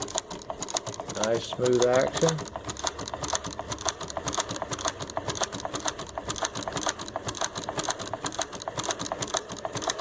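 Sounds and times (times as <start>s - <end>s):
sewing machine stitching: 0.0s - 10.0s.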